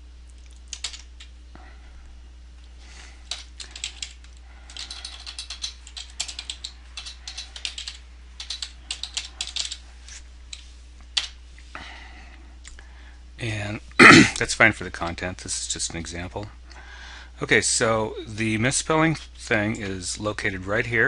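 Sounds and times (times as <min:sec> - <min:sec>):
low electrical hum: 0:00.0 - 0:21.0
typing on computer keyboard: 0:00.4 - 0:01.3, 0:03.3 - 0:09.8.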